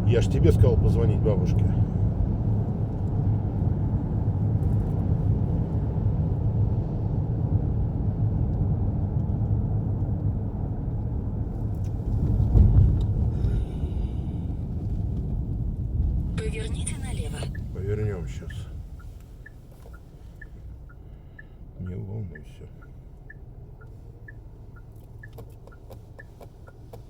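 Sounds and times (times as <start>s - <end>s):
car cabin road rumble: 0.0s - 27.0s
car bump: 11.9s - 20.7s.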